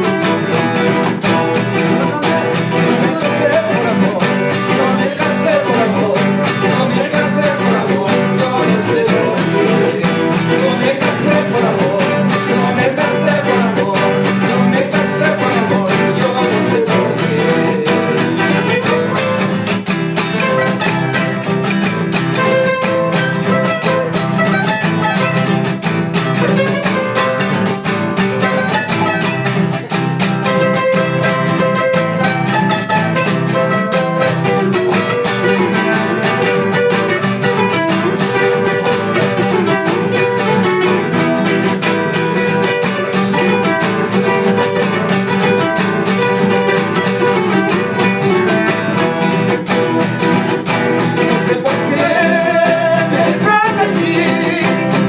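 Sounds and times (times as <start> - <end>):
lower guitar accompaniment: 0.0 - 55.0
plucked guitar melody: 0.0 - 55.0.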